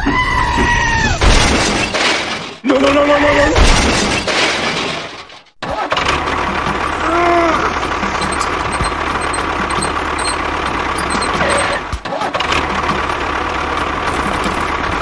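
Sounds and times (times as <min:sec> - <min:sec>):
engine running: 0:06.1 - 0:12.0, 0:12.6 - 0:15.0.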